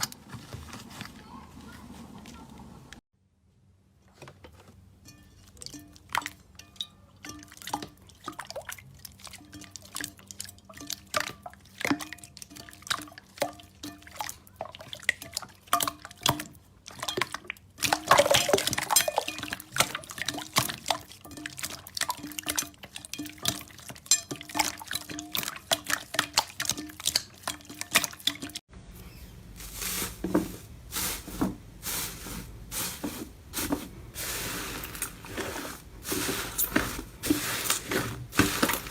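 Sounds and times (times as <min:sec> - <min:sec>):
hissy slime texture: 0:29.0 - 0:38.9.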